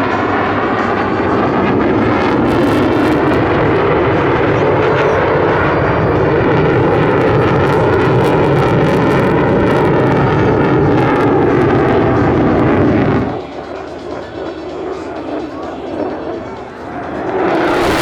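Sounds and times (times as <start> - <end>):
jet aircraft roaring past: 0.0 - 18.0.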